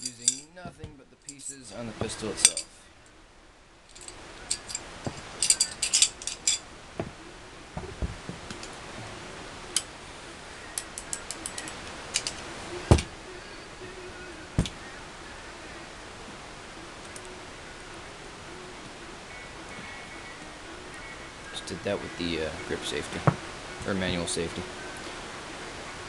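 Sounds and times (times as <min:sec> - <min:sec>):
pistol parts clicking: 0:03.9 - 0:06.6, 0:10.8 - 0:12.5.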